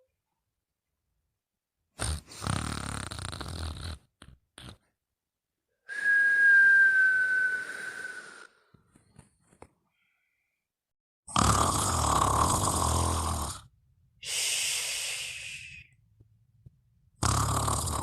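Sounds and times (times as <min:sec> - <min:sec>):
person snoring: 0:02.0 - 0:04.8, 0:11.3 - 0:15.9, 0:17.2 - 0:18.0
whistling breath: 0:05.8 - 0:08.8, 0:14.2 - 0:15.9.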